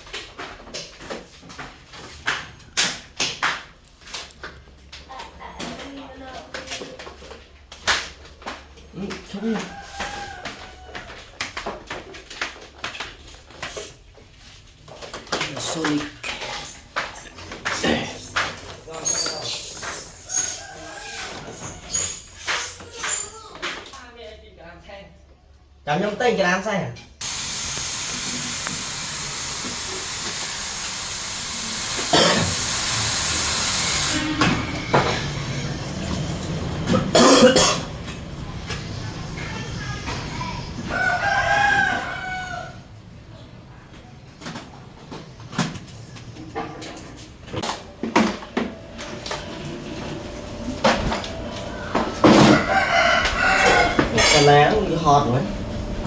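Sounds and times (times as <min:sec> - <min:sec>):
pressurised gas hissing: 0:27.2 - 0:35.8.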